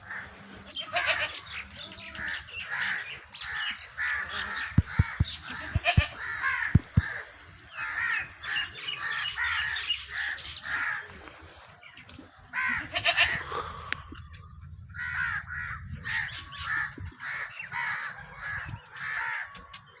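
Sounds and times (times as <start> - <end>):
crows cawing: 2.2 - 11.2, 12.6 - 13.6, 15.0 - 20.0.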